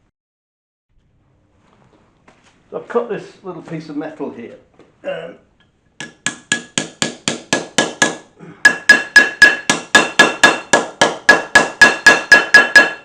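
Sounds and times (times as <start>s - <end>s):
hammer striking metal: 6.0s - 13.0s.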